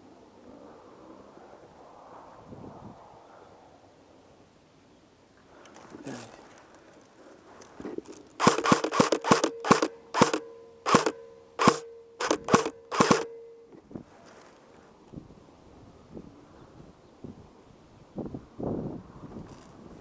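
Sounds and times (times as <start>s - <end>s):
airsoft gun shots: 8.4s - 13.4s.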